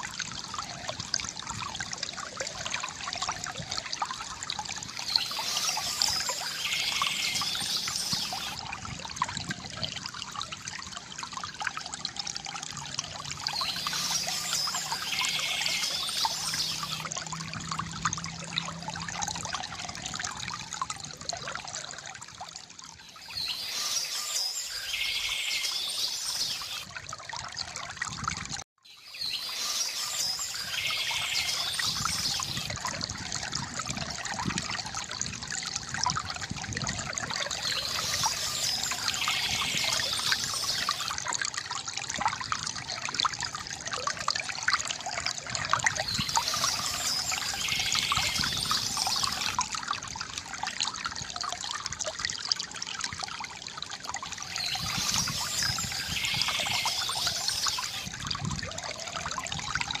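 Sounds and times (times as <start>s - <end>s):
stream trickling: 0.0s - 60.0s
birdsong: 4.9s - 8.6s, 13.5s - 17.1s, 23.0s - 26.8s, 28.9s - 32.8s, 37.4s - 41.2s, 46.0s - 49.6s, 54.4s - 58.1s.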